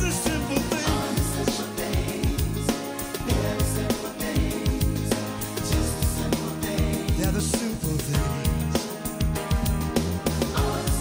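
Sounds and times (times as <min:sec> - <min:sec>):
instrumental pop music: 0:00.0 - 0:11.0.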